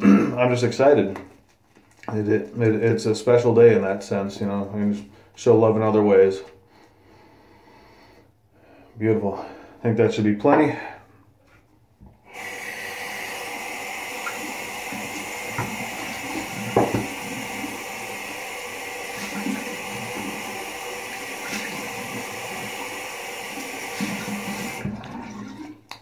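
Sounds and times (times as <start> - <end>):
water running from tap into sink: 12.3 - 26.0.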